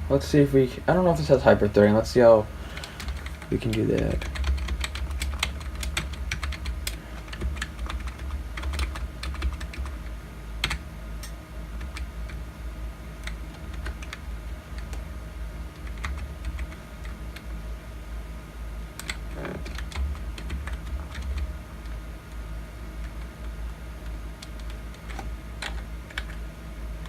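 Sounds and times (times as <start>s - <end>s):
steady low hum: 0.0s - 27.0s
computer keyboard keys clicking: 2.8s - 10.8s, 11.8s - 12.4s, 13.2s - 14.2s, 14.8s - 15.0s, 15.7s - 17.5s, 19.0s - 22.4s, 23.0s - 26.4s.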